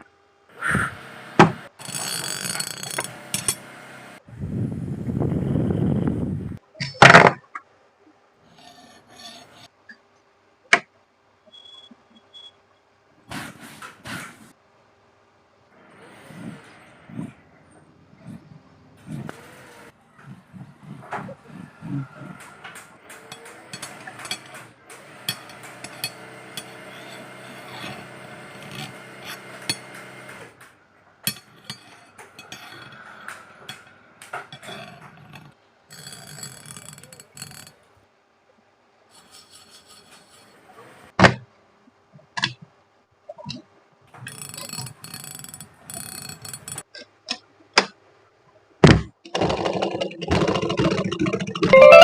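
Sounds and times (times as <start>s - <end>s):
sewing machine running: 22.3s - 30.6s.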